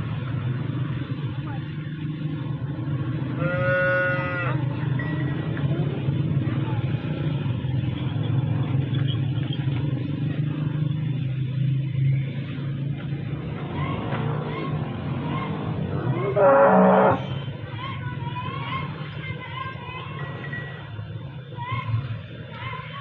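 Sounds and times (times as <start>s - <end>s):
farm animal calling: 3.4s - 4.6s, 16.0s - 17.4s.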